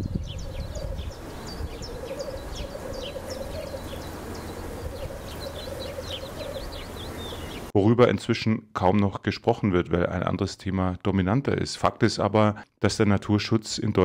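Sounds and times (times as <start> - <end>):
small songbirds chirping: 0.0 - 7.7.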